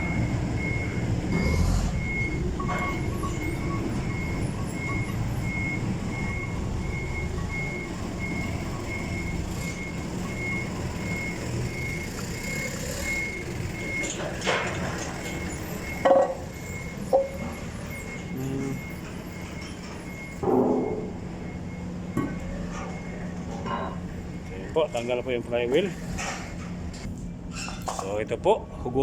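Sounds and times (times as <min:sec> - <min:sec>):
diesel engine rumbling: 0:00.0 - 0:20.4
back-up alarm beeping: 0:00.0 - 0:26.8.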